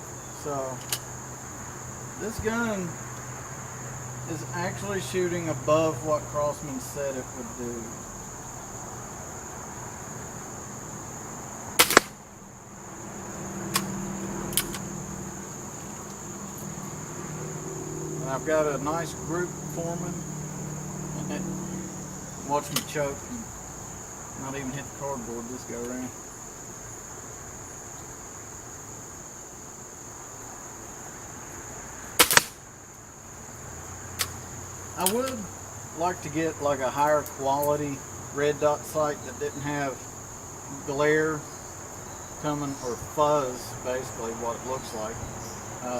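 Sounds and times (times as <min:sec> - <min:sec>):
crickets chirring: 0:00.0 - 0:45.9
high-pitched insect drone: 0:00.0 - 0:45.9
low background hiss: 0:00.0 - 0:45.9
air pistol firing crack: 0:11.8 - 0:12.2, 0:13.7 - 0:14.9, 0:32.2 - 0:32.6.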